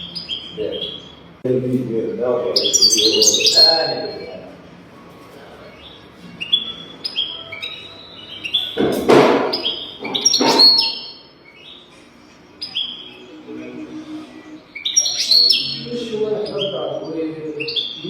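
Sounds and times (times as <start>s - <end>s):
bird chirping: 0.0s - 4.6s, 5.6s - 18.0s
noisy bumps: 8.8s - 10.8s.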